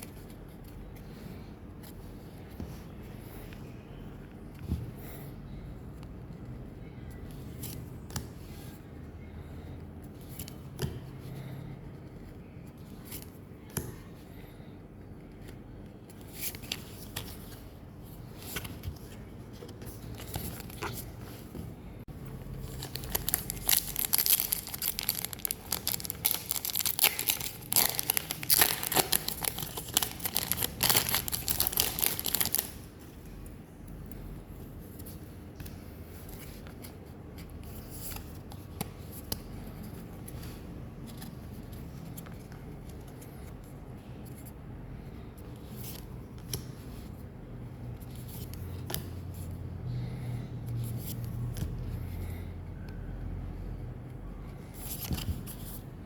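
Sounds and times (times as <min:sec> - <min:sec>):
quiet rustling of handling: 0:00.0 - 0:56.0
foil wrapper tearing and crinkling: 0:22.8 - 0:32.7.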